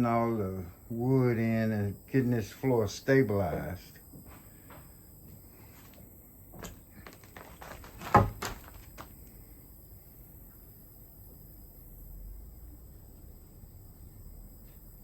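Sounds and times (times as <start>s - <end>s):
footsteps on wooden floor: 6.6s - 9.1s.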